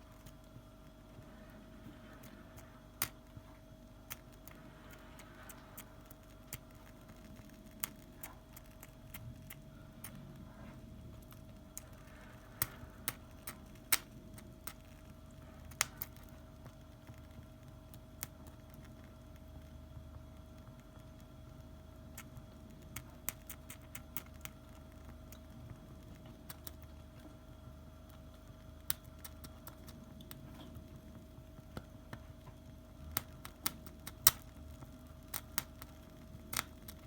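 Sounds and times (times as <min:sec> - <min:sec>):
faint steady hum: 0:00.0 - 0:37.0
sharp clicks and small taps: 0:11.2 - 0:15.0.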